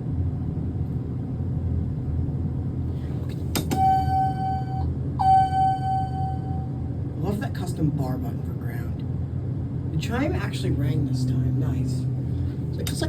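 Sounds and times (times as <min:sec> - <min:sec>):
low steady hum: 0:00.0 - 0:13.0
elevator arrival chime: 0:03.7 - 0:06.9.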